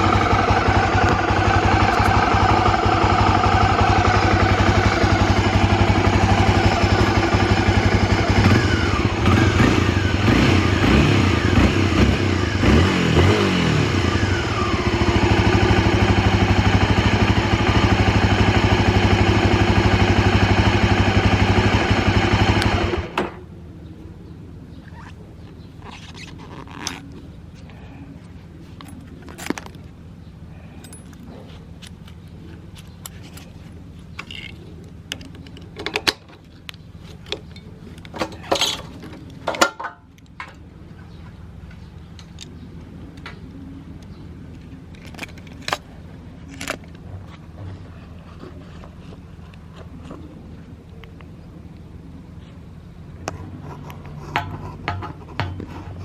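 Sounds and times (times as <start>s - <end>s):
motorcycle engine idling: 0.0s - 25.9s.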